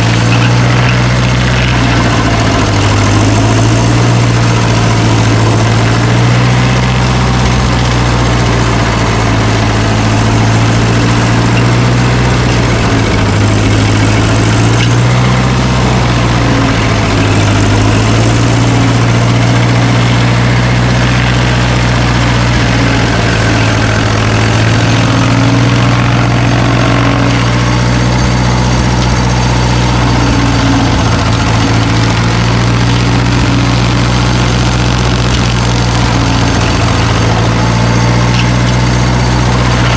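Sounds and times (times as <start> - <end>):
heavy machine engine running: 0.0 - 39.9.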